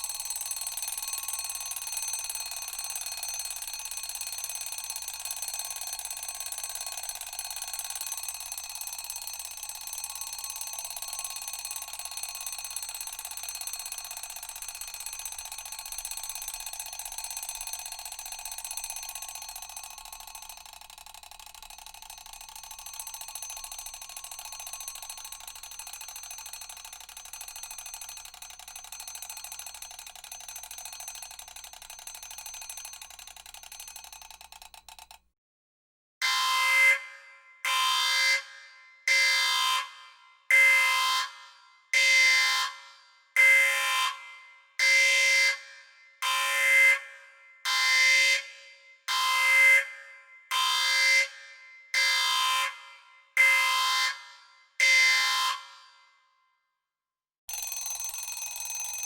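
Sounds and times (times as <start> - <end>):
alarm clock bell ringing: 0.0 - 34.4, 57.5 - 59.0.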